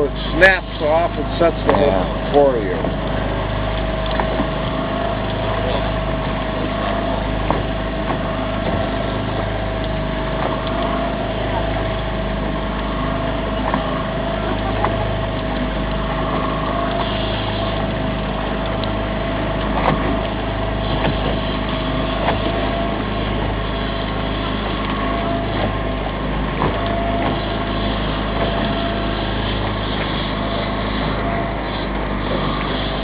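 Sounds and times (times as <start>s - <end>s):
boat engine running: 0.0s - 33.0s.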